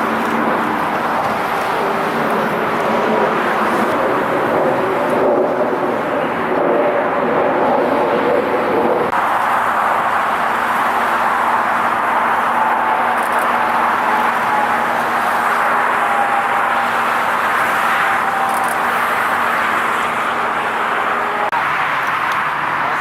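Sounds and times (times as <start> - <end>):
jet engines rushing: 0.0 - 23.0
low engine hum: 0.0 - 23.0
faint whining tone: 10.3 - 21.5.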